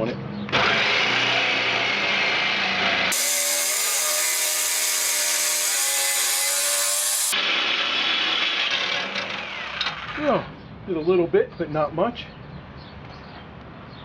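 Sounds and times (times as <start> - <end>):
jigsaw cutting sheet steel: 0.5 - 10.2.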